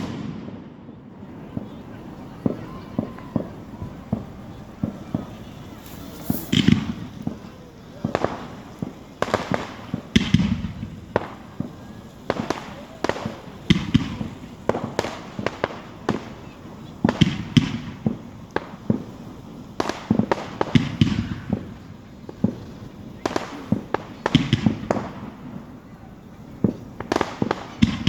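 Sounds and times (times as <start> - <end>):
fireworks bangs and crackling: 0.0 - 28.0.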